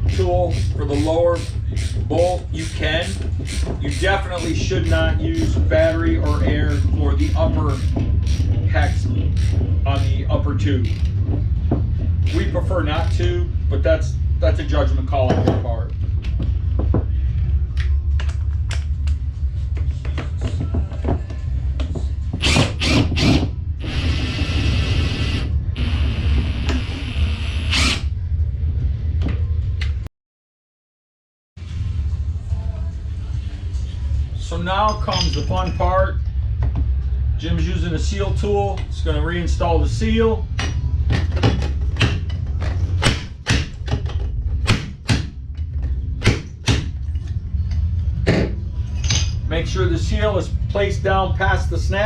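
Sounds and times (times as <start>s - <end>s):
steady low hum: 0.0s - 30.1s, 31.6s - 52.0s
power driver whining: 22.4s - 28.1s.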